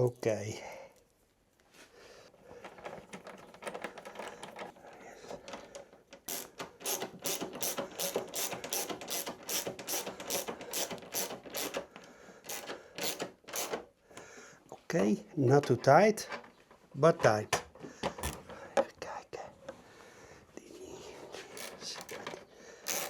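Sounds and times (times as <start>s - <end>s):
handling noise: 2.5s - 13.9s
ratchet clicking: 6.2s - 11.8s, 12.4s - 13.8s, 21.6s - 22.2s.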